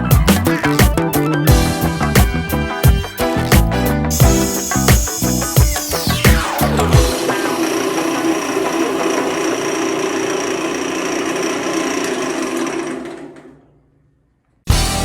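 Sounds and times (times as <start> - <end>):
lathe whirring with high whine: 4.2 - 13.4.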